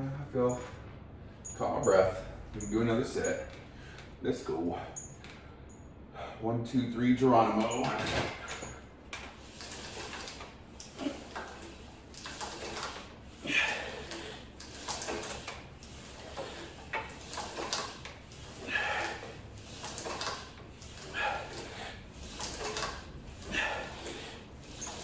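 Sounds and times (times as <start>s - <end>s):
exercise machine sliding and knocking: 1.5s - 4.5s, 7.4s - 25.0s
hard exhalations: 13.4s - 14.5s, 18.5s - 19.4s, 23.3s - 24.6s.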